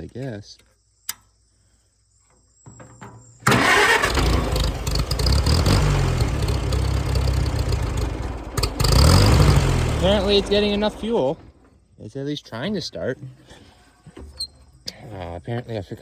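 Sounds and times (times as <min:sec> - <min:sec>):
tractor engine cranking: 0:02.7 - 0:12.0, 0:12.7 - 0:16.0.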